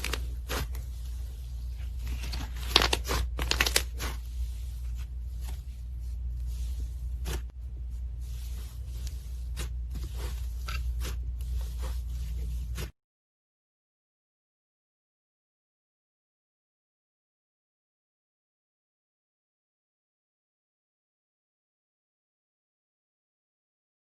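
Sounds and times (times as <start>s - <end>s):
steady low hum: 0.0s - 12.9s.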